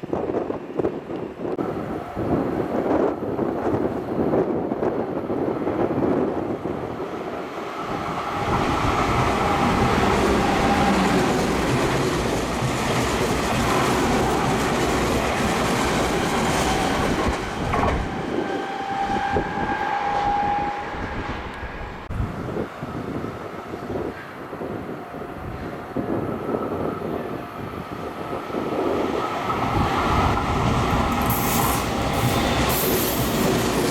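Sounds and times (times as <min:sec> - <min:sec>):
train wheels rushing on rails: 0:00.0 - 0:33.9
clickety-clack over rail joints: 0:07.5 - 0:20.1.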